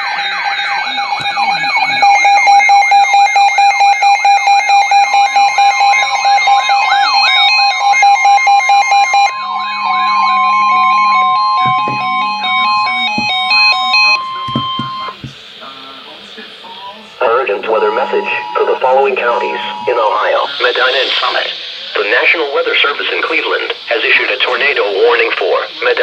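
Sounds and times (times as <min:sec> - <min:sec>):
high alarm tone: 0:00.0 - 0:15.3, 0:17.2 - 0:22.1
steady electronic tone: 0:00.0 - 0:15.3, 0:17.2 - 0:22.3
electronic rising and falling sweep: 0:05.1 - 0:14.2
stepping electronic notes: 0:09.3 - 0:15.3.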